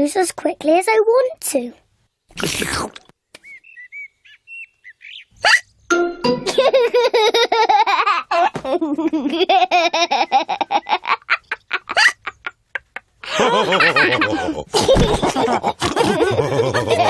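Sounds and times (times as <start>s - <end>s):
cartoon pigs laughing: 5.4s - 5.7s, 6.4s - 17.0s.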